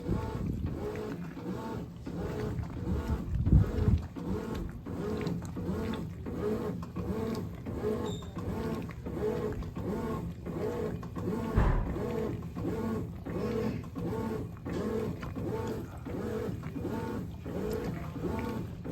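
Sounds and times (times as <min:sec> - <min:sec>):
washing machine motor whining: 0:00.0 - 0:18.9
heavy low thump: 0:11.6 - 0:12.1.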